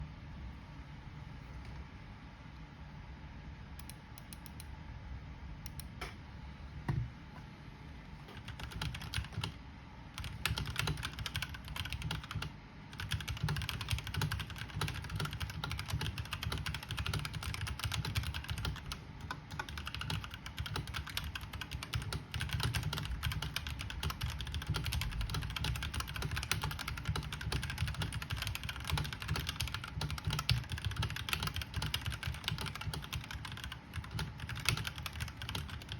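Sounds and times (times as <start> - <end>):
typing on mechanical keyboard: 8.3 - 9.6, 10.2 - 35.9.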